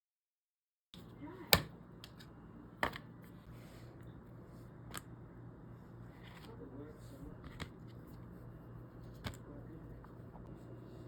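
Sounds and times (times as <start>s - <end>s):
low steady hum: 1.0s - 11.0s.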